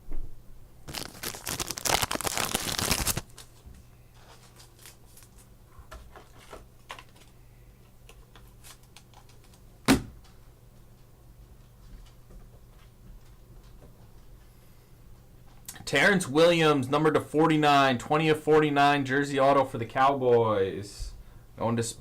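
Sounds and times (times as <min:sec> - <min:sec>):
rustling and sliding cards: 0:00.9 - 0:03.6.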